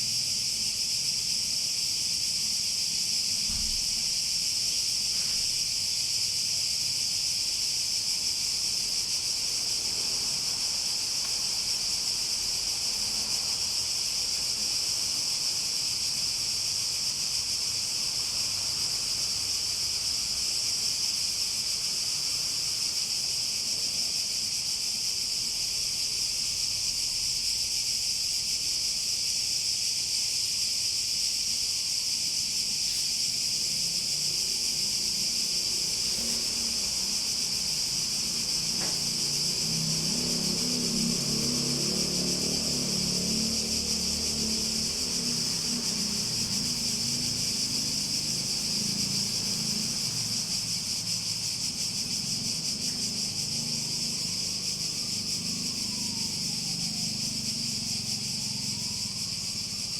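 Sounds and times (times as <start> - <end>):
cicadas buzzing: 0.0 - 59.9.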